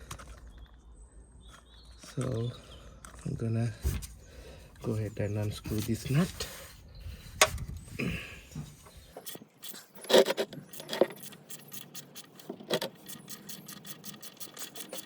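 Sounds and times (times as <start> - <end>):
metal hand tools clicking: 9.2 - 15.0.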